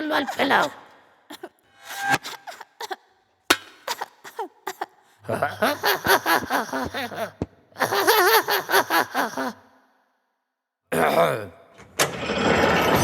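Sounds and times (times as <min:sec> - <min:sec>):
wavering wordless vocal sounds: 0:00.0 - 0:01.6, 0:05.2 - 0:09.6
sharp knocks and cracking impacts: 0:03.5 - 0:04.0.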